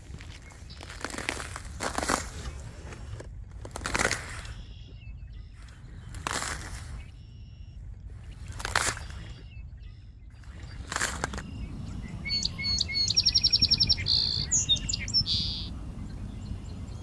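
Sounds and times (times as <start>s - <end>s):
songbird trilling: 0.1s - 2.5s, 3.8s - 17.0s.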